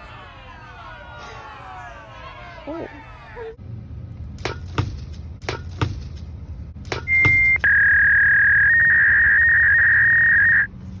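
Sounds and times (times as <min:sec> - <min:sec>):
electronic beep tone: 0:07.1 - 0:10.7.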